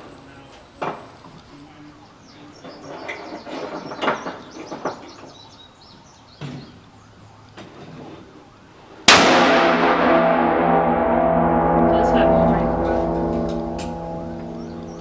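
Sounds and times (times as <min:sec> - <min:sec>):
gunshots: 0:09.1 - 0:11.5
loud sound with held tones: 0:09.1 - 0:15.0.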